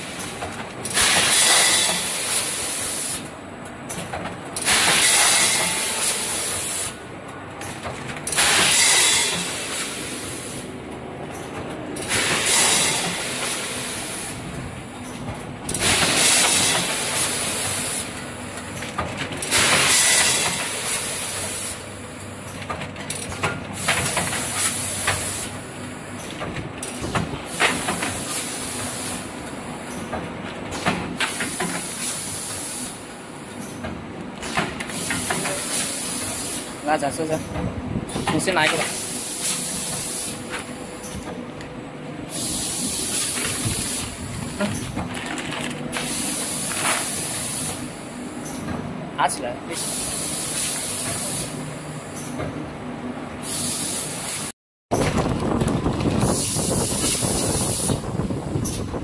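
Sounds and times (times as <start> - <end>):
packing machine running: 0.0 - 54.2, 54.9 - 59.0
pneumatic air hiss: 0.9 - 3.2, 4.6 - 7.0, 8.3 - 10.7, 12.0 - 14.4, 38.9 - 40.5, 42.3 - 44.1, 49.8 - 51.6, 53.4 - 54.5, 56.4 - 58.0
mechanism clicks and clatter: 3.2 - 6.6, 7.2 - 10.0, 22.2 - 25.6, 26.2 - 32.6, 43.1 - 47.8, 54.9 - 59.0.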